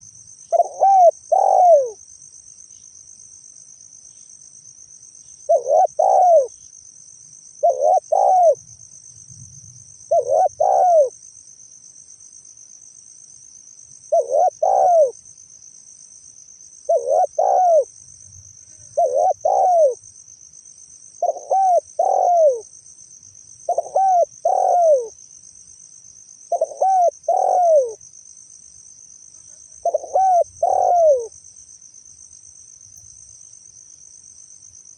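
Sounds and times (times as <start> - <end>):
high insect buzz: 0.0 - 34.9
dove cooing: 0.5 - 2.0, 5.5 - 6.6, 7.6 - 8.6, 10.1 - 11.2, 14.1 - 15.2, 16.9 - 17.9, 18.9 - 20.0, 21.2 - 22.7, 23.7 - 25.2, 26.5 - 28.0, 29.5 - 31.3.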